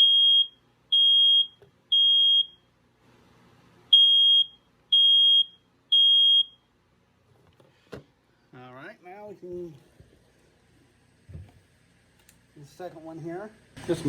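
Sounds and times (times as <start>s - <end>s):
smoke alarm beeping: 0.0s - 2.7s, 3.9s - 6.7s.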